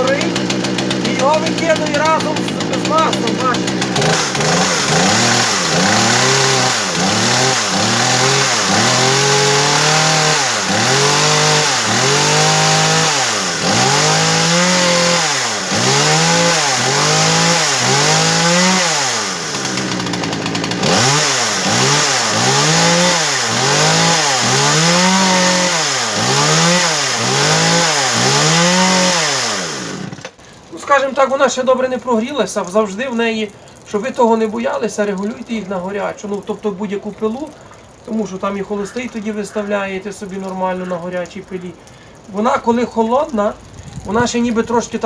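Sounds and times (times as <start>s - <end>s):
chainsaw engine revving: 0.0s - 30.4s.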